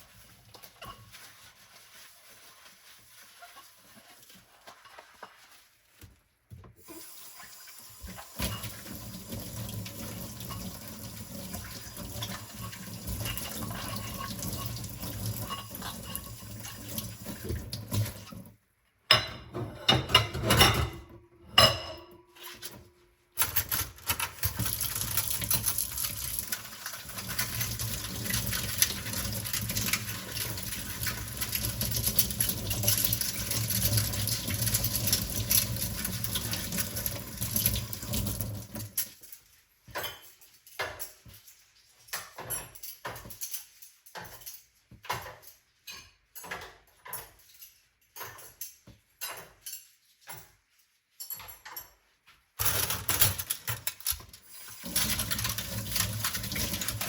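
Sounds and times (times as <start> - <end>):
tap water running into sink: 6.6 - 18.4, 24.1 - 39.0, 54.6 - 57.0
dishes clinking: 19.1 - 22.4, 39.9 - 41.5, 42.1 - 50.6.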